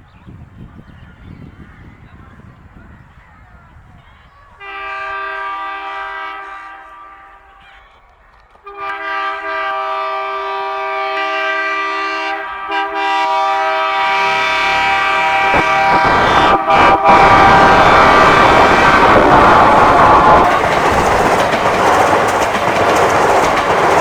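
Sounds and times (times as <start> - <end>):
approaching train running noise: 0.0 - 24.0
locomotive air horn blasts: 4.6 - 7.8, 8.6 - 22.5.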